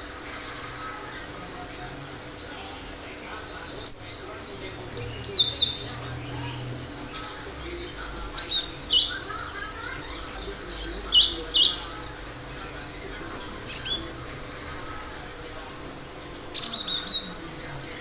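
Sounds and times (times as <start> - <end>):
bird chirping: 0.0 - 18.0.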